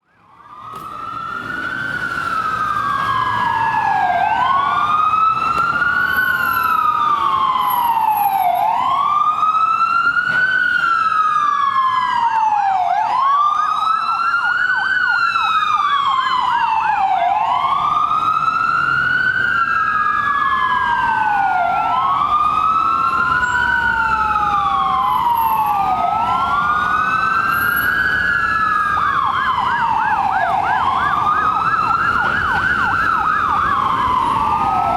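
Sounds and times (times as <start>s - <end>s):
ambulance siren wailing: 0.0s - 34.9s.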